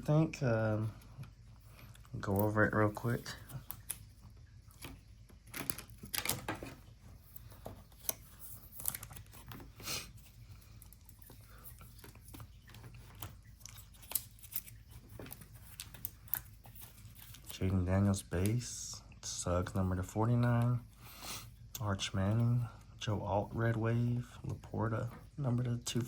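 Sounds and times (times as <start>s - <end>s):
cards rustling and crinkling: 0.1s - 20.9s.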